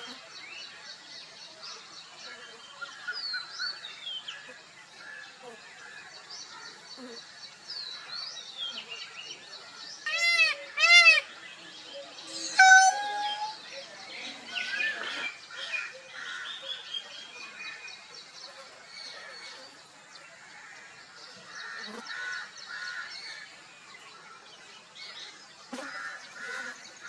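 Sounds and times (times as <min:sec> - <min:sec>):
birds chirping: 0:06.4 - 0:19.5
honk-like bird calls: 0:12.3 - 0:13.6.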